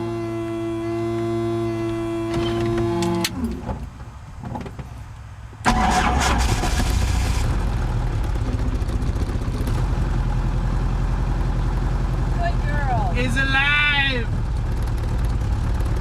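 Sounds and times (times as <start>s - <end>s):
helicopter engine starting: 5.6s - 7.6s.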